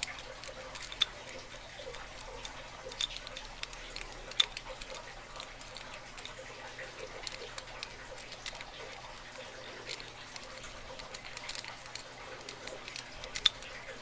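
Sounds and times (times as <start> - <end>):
lock pick clicking in a lock: 0.0 - 14.0.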